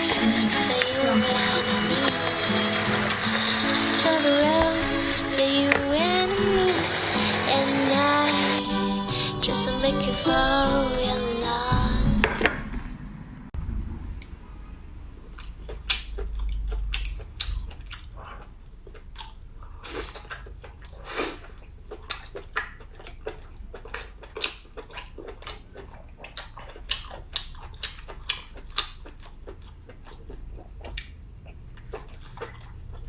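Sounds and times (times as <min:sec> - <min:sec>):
person chewing food: 0:15.2 - 0:33.0.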